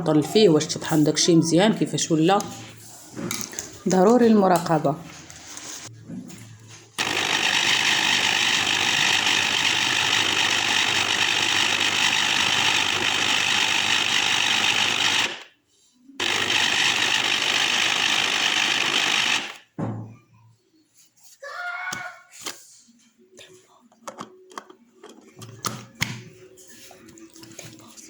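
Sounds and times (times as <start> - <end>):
electric blender grinding: 7.0 - 15.5, 16.2 - 19.6.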